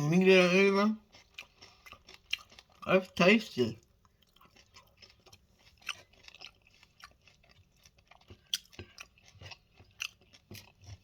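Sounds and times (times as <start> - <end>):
person chewing crunchy chips: 0.0 - 11.0.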